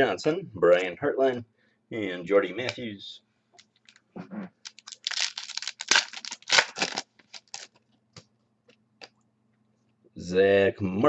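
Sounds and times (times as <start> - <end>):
foil wrapper tearing and crinkling: 4.6 - 7.8.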